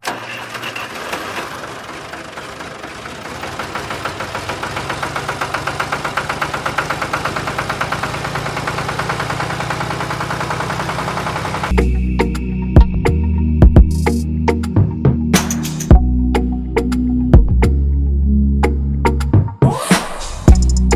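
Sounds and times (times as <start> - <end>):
small motor chugging: 0.4 - 11.7.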